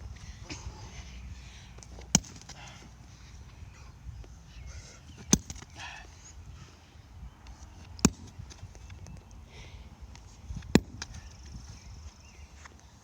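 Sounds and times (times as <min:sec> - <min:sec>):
sledgehammer striking padlock: 0:02.1 - 0:02.6, 0:05.3 - 0:05.7.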